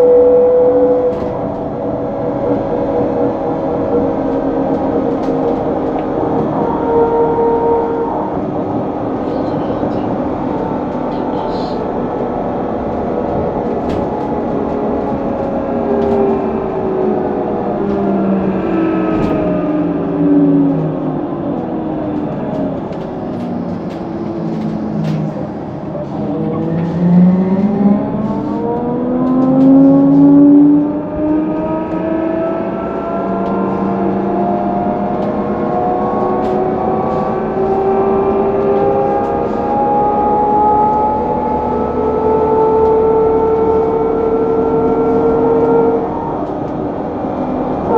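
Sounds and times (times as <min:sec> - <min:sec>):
trolleybus electric drive whining: 0:00.0 - 0:47.9.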